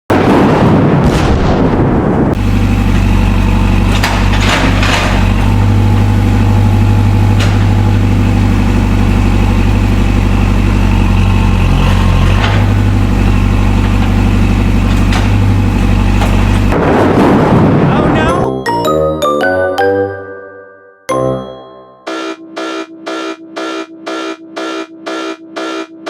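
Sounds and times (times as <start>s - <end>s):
engine idling: 2.4s - 16.8s.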